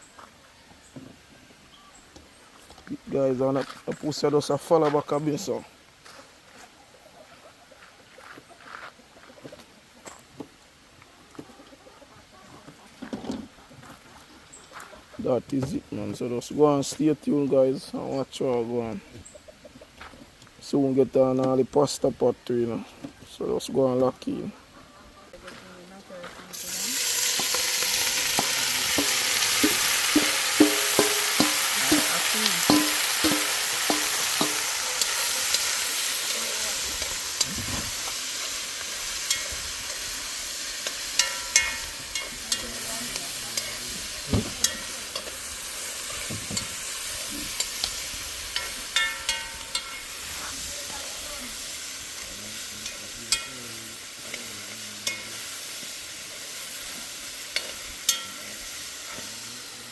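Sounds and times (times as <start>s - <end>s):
chicken sizzling in hot oil: 26.5s - 59.9s.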